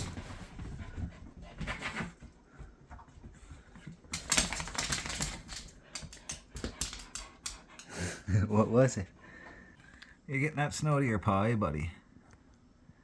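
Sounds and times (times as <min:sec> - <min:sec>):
dog claws clicking and scuffling: 0:02.9 - 0:07.9.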